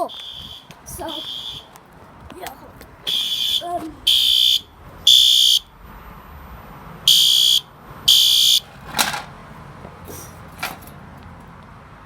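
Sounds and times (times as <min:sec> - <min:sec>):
fire alarm horn beeping: 0:00.0 - 0:01.8, 0:03.1 - 0:08.8.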